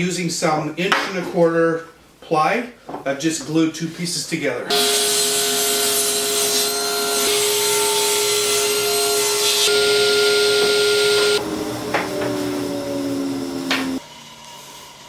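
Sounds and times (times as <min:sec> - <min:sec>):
power tool whining: 0:04.7 - 0:15.0.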